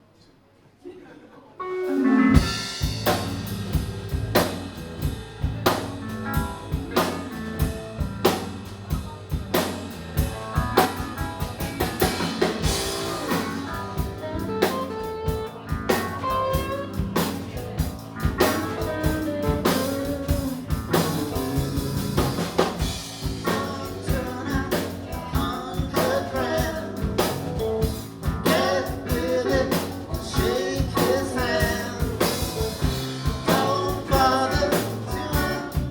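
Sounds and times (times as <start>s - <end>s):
rock band playing: 1.6s - 35.9s
drum kit beat: 1.8s - 35.9s.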